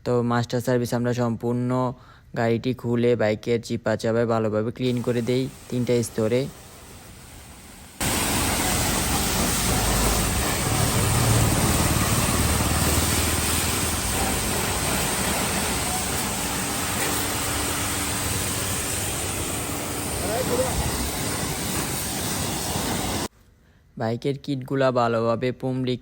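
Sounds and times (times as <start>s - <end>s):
pressure washer spraying water: 4.9s - 23.3s.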